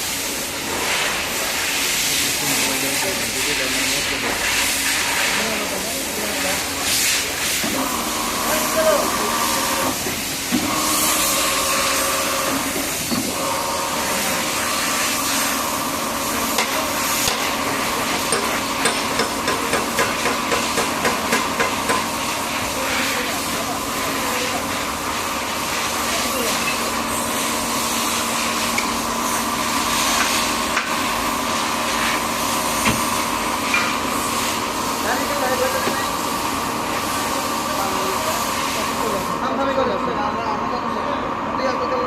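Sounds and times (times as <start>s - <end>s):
lathe humming and whining: 0.0s - 42.0s
metal lathe motor whine: 7.6s - 19.8s.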